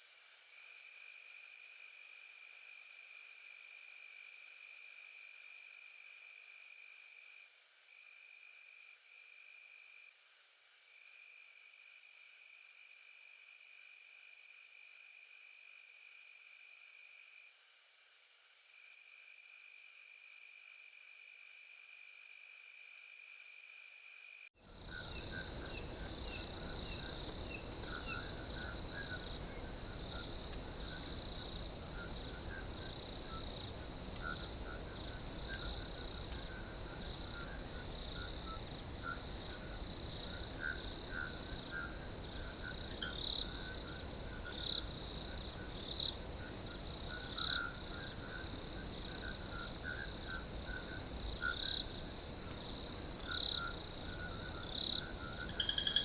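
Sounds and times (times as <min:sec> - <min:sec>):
crickets trilling: 0:24.6 - 0:56.0
frogs chirping: 0:24.6 - 0:56.0.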